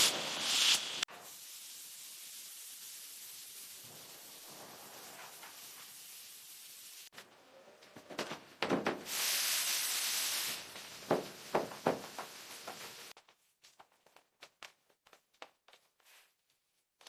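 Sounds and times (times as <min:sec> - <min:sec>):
loud hiss: 0:00.0 - 0:07.1, 0:09.0 - 0:13.1
steady hiss: 0:00.0 - 0:07.1, 0:09.0 - 0:13.2.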